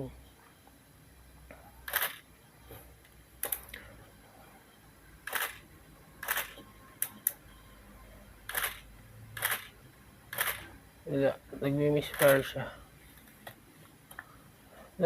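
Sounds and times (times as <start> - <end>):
camera shutter double click: 5.3 - 5.6, 8.5 - 10.7, 12.1 - 12.4.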